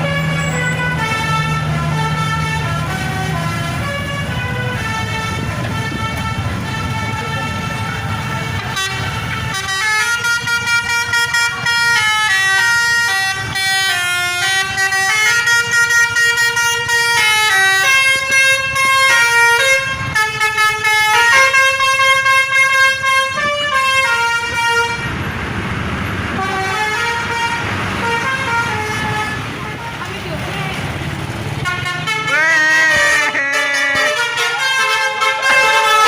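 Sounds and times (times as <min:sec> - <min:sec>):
bus horn playing a tune: 0:00.0 - 0:25.2, 0:26.3 - 0:30.2, 0:31.6 - 0:36.0
engine and traffic rumble: 0:00.0 - 0:36.0.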